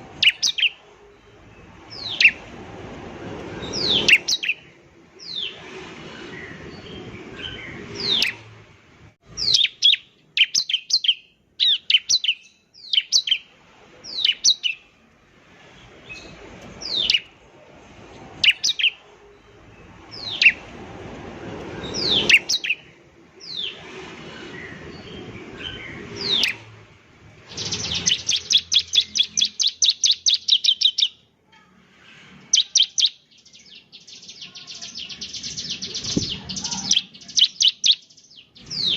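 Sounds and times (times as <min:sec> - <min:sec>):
bird whistled notes: 0:32.5 - 0:38.9.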